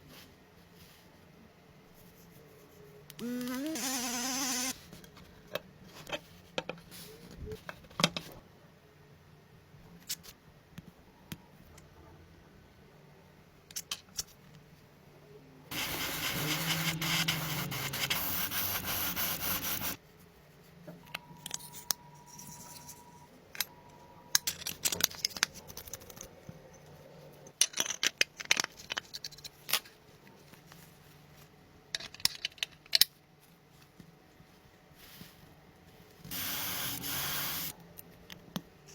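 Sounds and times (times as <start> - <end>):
spray hiss: 36.3 - 37.7.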